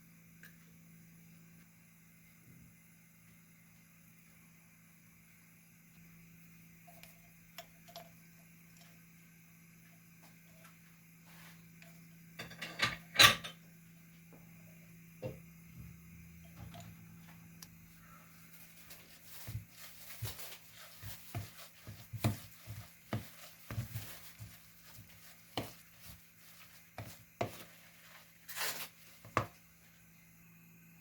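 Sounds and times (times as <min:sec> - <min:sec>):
steady low hum: 0:00.0 - 0:31.0
rustling: 0:18.0 - 0:29.4
kitchen knocks and taps: 0:21.1 - 0:24.1.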